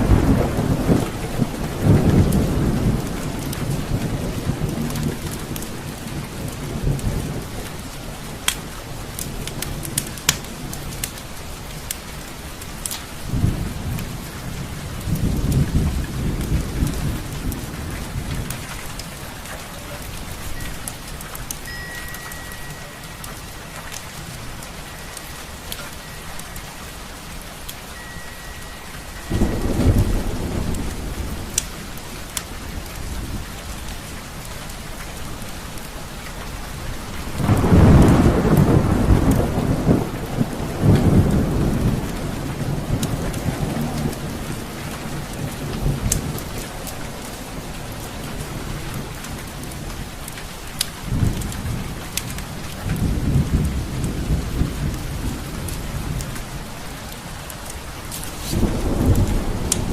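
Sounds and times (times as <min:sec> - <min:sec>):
thunder rumbling: 0:00.0 - 0:35.6, 0:36.5 - 0:59.9
steady rain: 0:00.0 - 0:59.9
wood fire crackles: 0:00.0 - 0:59.9.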